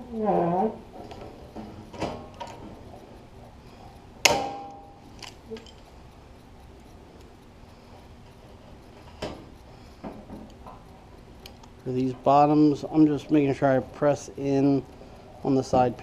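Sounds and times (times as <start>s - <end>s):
light clicks of tool and metal: 1.0s - 16.0s
thin steel ringing: 4.2s - 5.9s.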